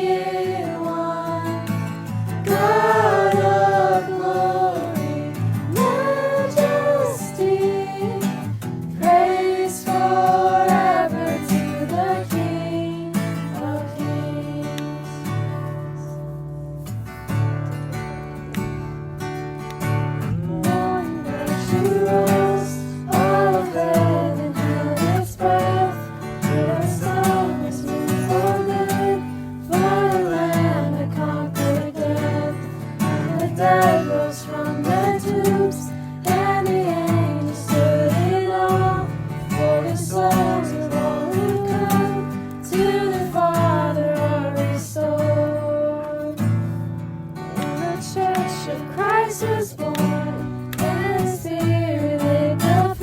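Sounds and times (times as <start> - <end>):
strummed acoustic guitar: 0.0 - 53.0
person singing: 2.5 - 16.2, 20.4 - 46.4.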